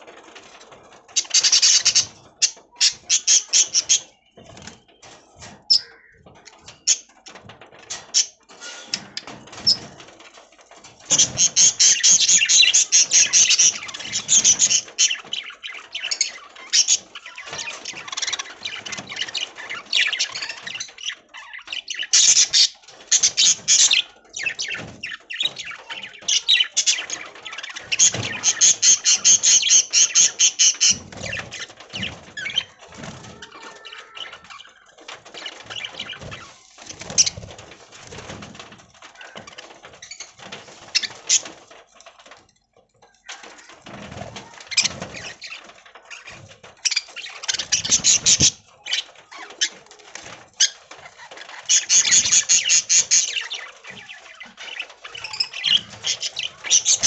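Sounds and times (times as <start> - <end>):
budgerigars chirping and warbling: 1.2 - 7.2, 11.1 - 37.5, 44.7 - 49.8, 50.6 - 57.0.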